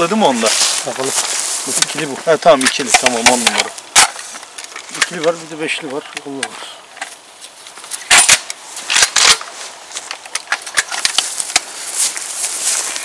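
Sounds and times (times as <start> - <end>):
shotgun loading clicks: 8.0 - 11.7.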